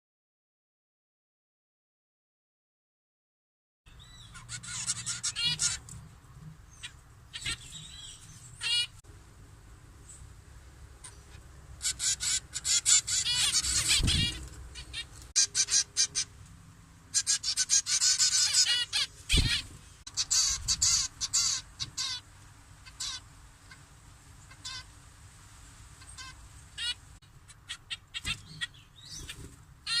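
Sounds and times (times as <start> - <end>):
birds chirping: 3.9 - 9.0, 9.9 - 25.1, 25.9 - 30.0.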